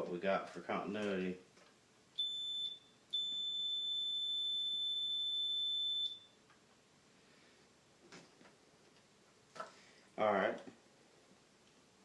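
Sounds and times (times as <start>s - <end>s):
multimeter continuity beep: 2.2s - 6.4s.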